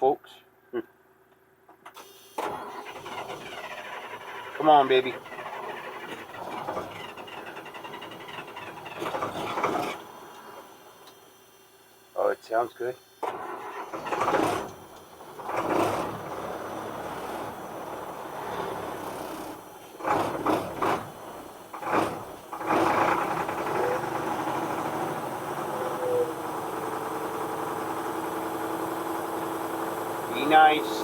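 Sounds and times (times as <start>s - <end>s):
truck engine idling: 2.4s - 31.0s.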